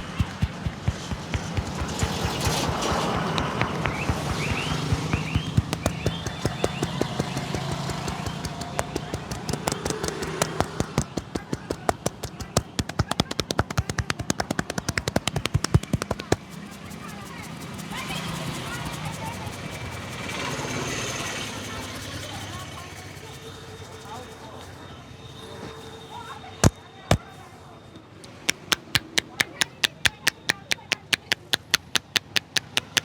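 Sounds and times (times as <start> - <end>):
hand slaps on head: 0.0 - 16.4.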